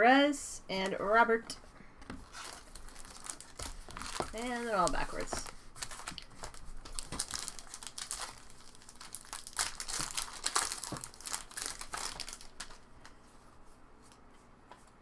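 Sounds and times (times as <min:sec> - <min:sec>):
foil wrapper crinkling and tearing: 0:02.2 - 0:13.2.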